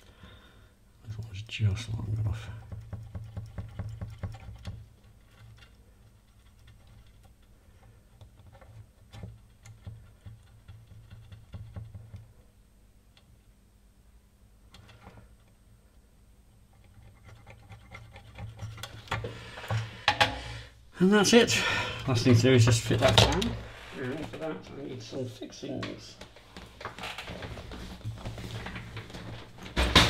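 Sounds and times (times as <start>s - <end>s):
small parts clicking and scratching: 1.1s - 12.3s, 16.6s - 20.2s.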